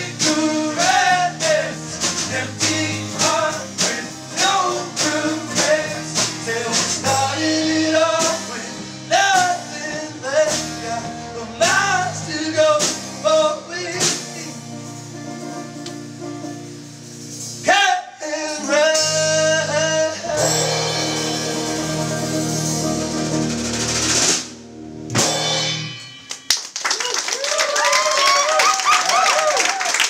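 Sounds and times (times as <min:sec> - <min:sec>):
person singing: 0:00.0 - 0:14.6, 0:17.6 - 0:22.9
folk-punk band playing: 0:00.0 - 0:26.8.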